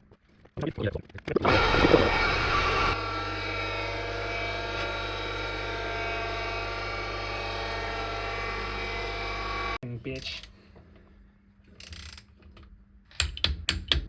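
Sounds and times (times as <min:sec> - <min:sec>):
steady machine drone: 0:01.5 - 0:09.8.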